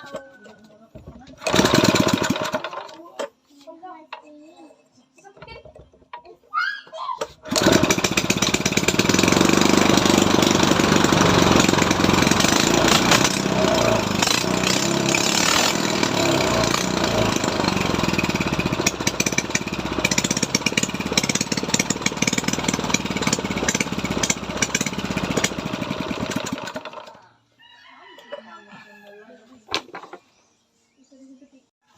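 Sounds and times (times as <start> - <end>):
small engine running: 1.4 - 3.3, 7.4 - 27.2.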